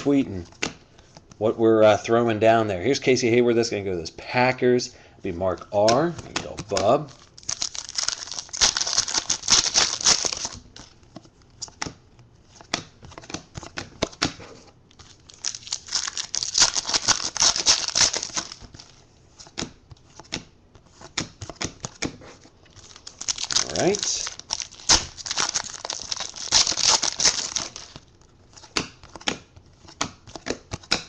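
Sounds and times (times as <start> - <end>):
cards clicking and rustling: 5.6 - 31.0
foil wrappers tearing and crinkling: 6.7 - 10.9, 14.9 - 18.9, 22.7 - 28.0.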